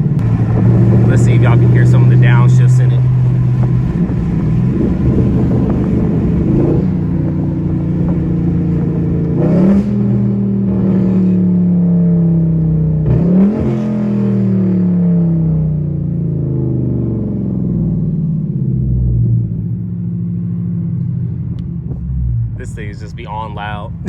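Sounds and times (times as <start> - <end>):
engine revs jumping on downshift: 0.0 - 15.6
car engine running while driving: 0.0 - 24.0.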